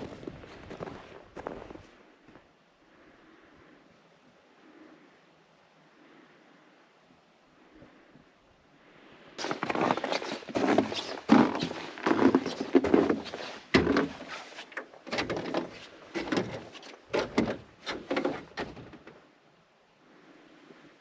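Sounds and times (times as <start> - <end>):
footsteps crunching in snow: 0.0 - 2.4, 9.4 - 16.9.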